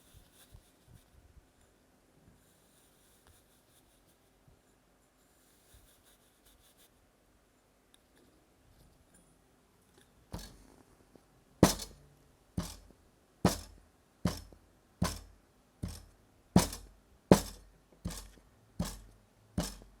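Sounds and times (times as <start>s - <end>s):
knife chopping through sand: 10.4s - 10.6s, 11.6s - 12.0s, 12.6s - 12.9s, 13.5s - 20.0s.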